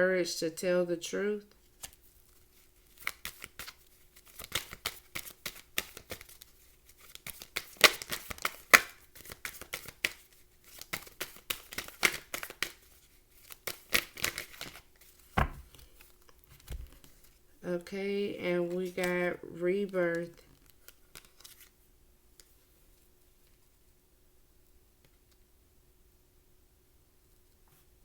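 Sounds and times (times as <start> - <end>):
cards being shuffled: 2.8 - 17.2, 20.3 - 21.7.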